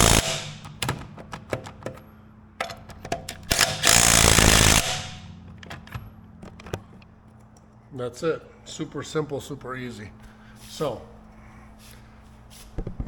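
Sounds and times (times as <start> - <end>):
impact wrench hammering: 0.0 - 6.0.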